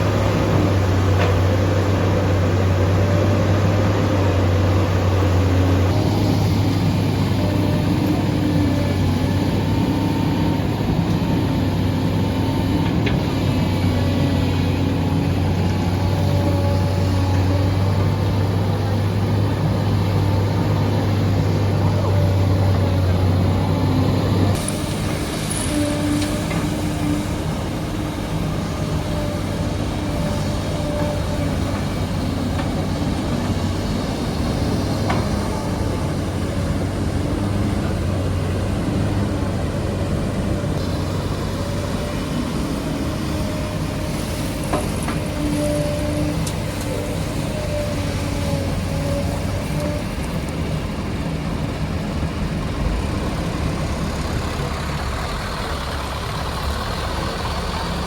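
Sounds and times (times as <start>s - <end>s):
excavator diesel engine running: 0.0s - 58.0s.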